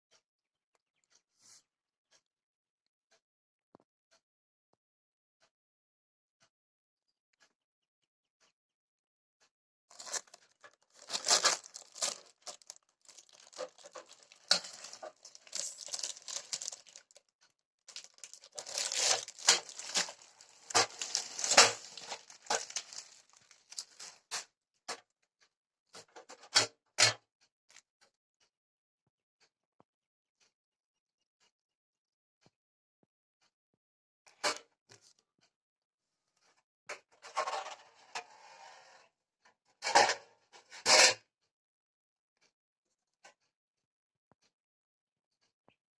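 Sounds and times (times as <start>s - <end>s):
rustling and crinkling: 9.9s - 17.3s, 17.9s - 24.4s.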